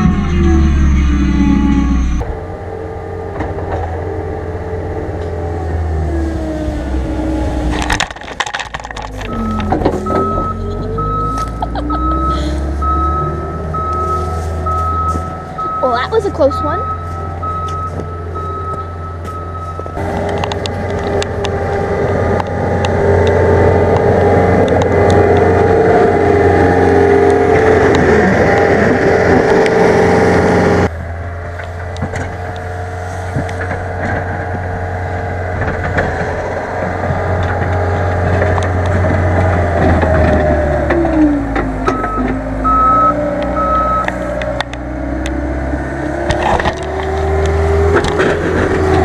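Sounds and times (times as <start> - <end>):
reversing alarm beeps: 0.0 - 2.2, 9.3 - 20.0, 41.8 - 44.2
diesel engine running hard: 0.0 - 49.0.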